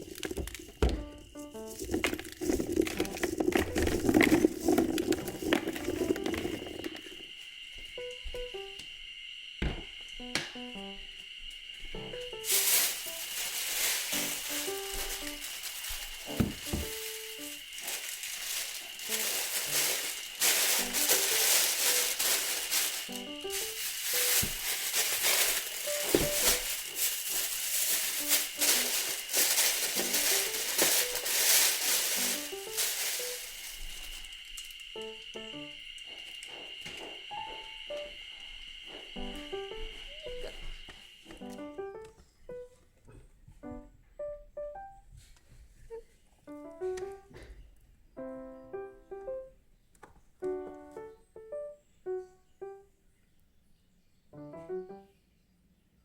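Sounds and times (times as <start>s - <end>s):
shaker-like rattle: 0.0s - 7.2s, 12.2s - 35.7s
gentle piano music: 0.7s - 7.1s, 7.9s - 8.8s, 10.2s - 34.2s, 34.9s - 36.2s, 37.1s - 55.4s.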